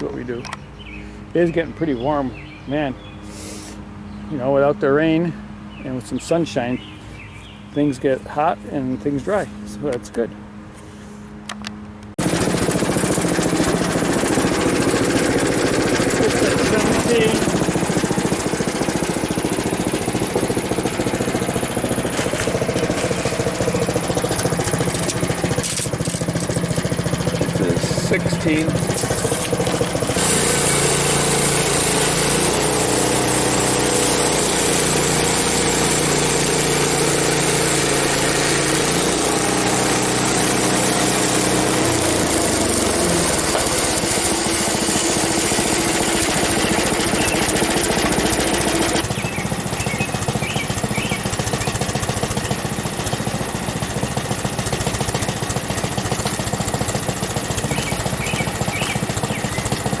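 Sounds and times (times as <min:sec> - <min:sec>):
sawmill engine running: 0:03.2 - 1:00.0
saw blade cutting log: 0:12.2 - 0:49.2, 0:49.8 - 1:00.0.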